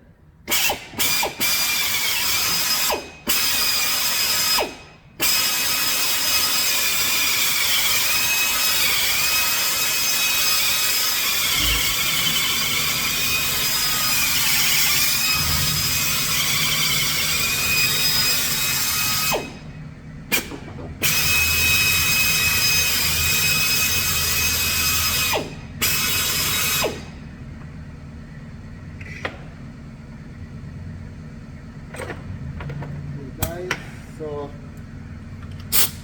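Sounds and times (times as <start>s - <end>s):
power drill boring with whine: 0.5s - 19.6s, 21.0s - 27.0s
low hum: 11.4s - 15.9s.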